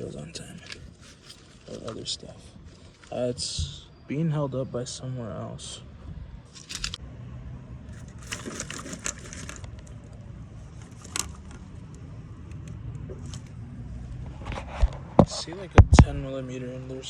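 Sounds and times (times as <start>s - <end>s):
plastic clips clicking and rattling: 6.6s - 7.0s
clatter: 7.9s - 10.2s.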